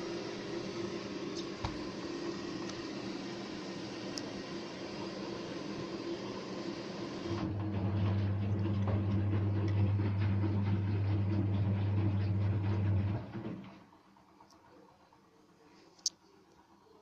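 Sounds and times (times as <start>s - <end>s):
washing machine hiss: 0.0s - 7.5s
washing machine low hum: 0.0s - 15.6s.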